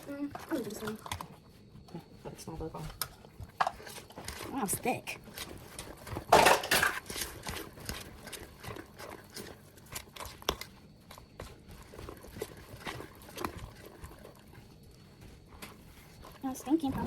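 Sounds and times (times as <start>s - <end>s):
spoon scraping mixing bowl: 0.0s - 1.5s, 2.9s - 17.0s.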